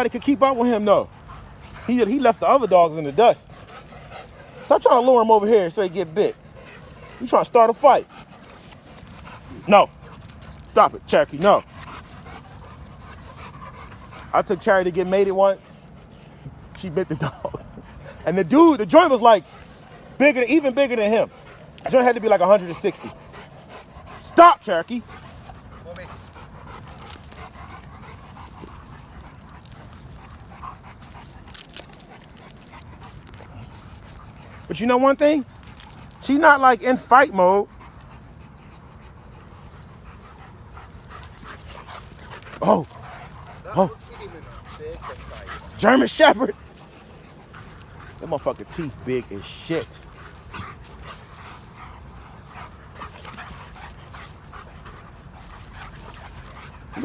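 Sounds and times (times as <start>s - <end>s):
dogs panting and whimpering: 0.0s - 57.0s.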